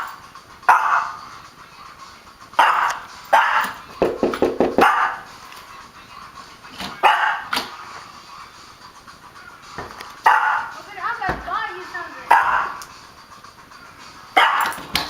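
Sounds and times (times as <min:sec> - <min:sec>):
puppy barking in sharp yaps: 0:00.7 - 0:01.2, 0:02.6 - 0:03.8, 0:04.8 - 0:05.3, 0:07.0 - 0:07.6, 0:10.2 - 0:10.8, 0:12.3 - 0:12.8, 0:14.4 - 0:14.8.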